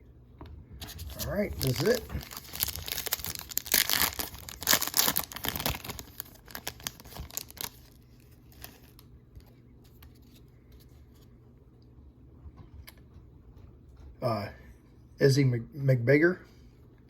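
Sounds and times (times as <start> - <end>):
wrapper tearing and crinkling: 0.9 - 9.0.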